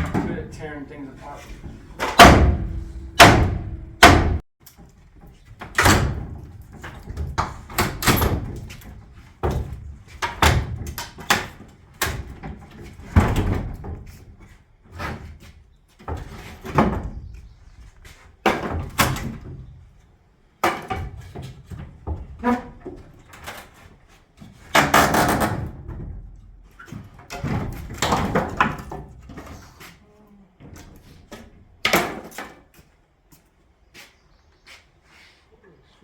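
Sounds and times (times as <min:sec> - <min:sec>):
heavy demolition bangs and thuds: 0:00.0 - 0:04.4.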